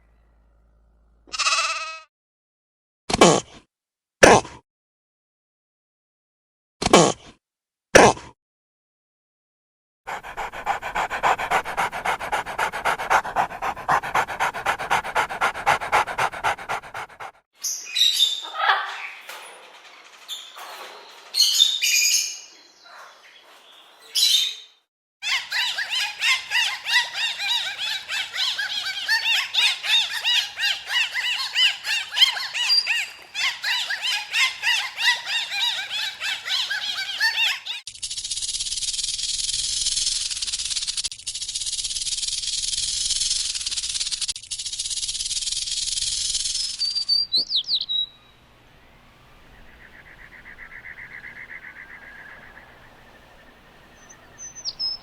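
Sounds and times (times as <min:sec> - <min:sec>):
animal calls in fast pulses: 0:10.1 - 0:17.4, 0:25.2 - 0:37.8.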